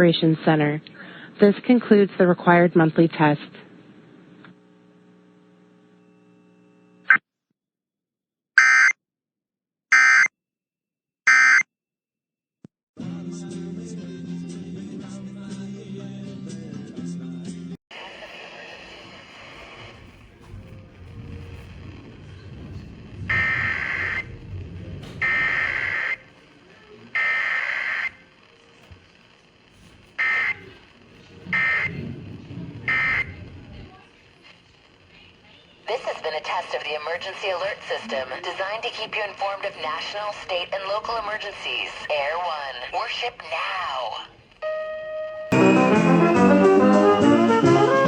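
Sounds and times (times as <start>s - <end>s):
faint hum: 0.0s - 7.1s.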